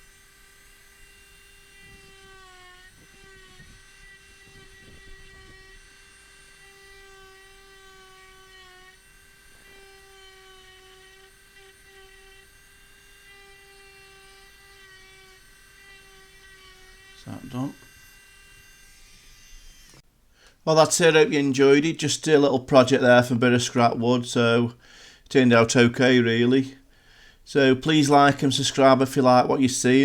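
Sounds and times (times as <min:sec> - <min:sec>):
rotary tool whining engraving wood: 0:00.0 - 0:20.0, 0:27.5 - 0:30.0.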